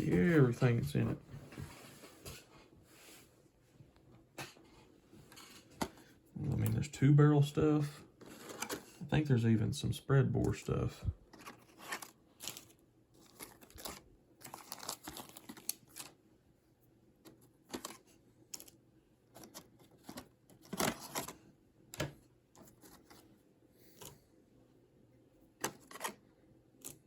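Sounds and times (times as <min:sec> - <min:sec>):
plastic packets crinkling: 0:11.4 - 0:16.2.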